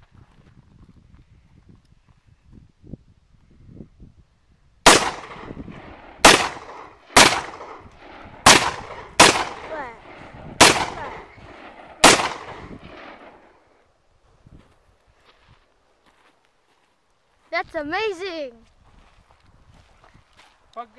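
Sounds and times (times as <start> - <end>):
rifle gunshots: 4.8 - 13.6.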